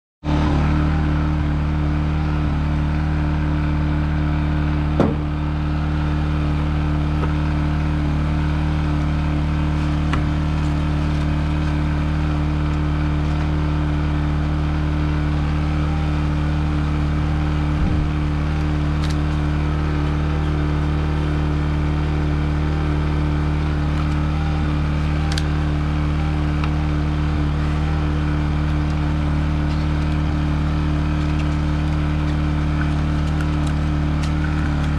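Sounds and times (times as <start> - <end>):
motor humming: 0.3 - 34.9
brief knock: 5.0 - 5.3.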